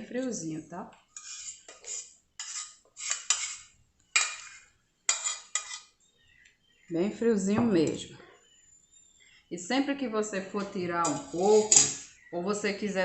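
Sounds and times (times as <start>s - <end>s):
metal spoon scraping container: 1.1s - 5.9s, 11.0s - 12.1s.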